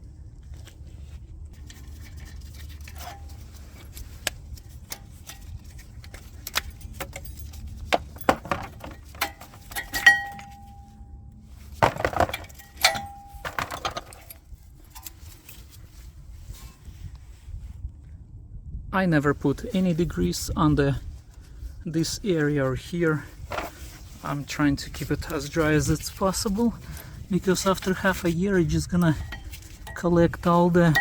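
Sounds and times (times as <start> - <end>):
metal brake parts clinking: 1.6 - 15.6, 23.4 - 24.0, 25.0 - 31.0.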